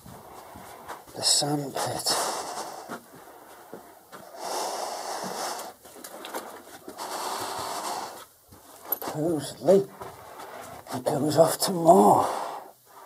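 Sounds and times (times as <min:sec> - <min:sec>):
person breathing heavily: 0:00.1 - 0:01.2, 0:01.8 - 0:08.3, 0:12.1 - 0:13.0.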